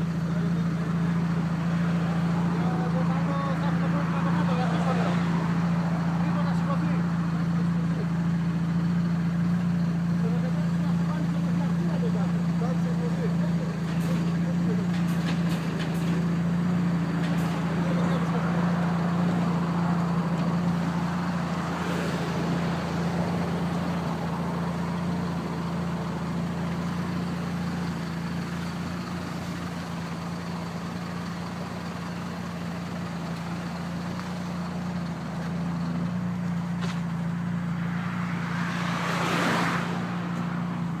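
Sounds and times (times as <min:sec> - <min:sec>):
vehicle engine idling: 0:00.0 - 0:41.0
vehicle passing: 0:17.6 - 0:26.6, 0:37.3 - 0:41.0.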